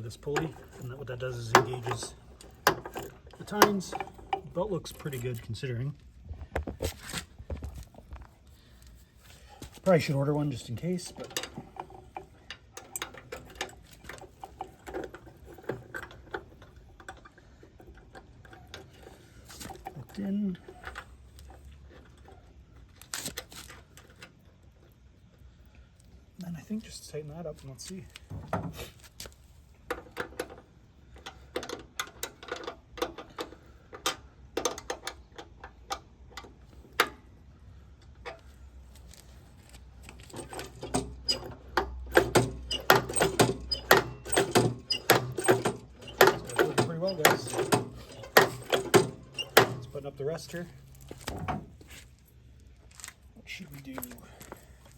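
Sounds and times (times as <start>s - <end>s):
light clicks and taps on metal: 0.2s - 5.6s.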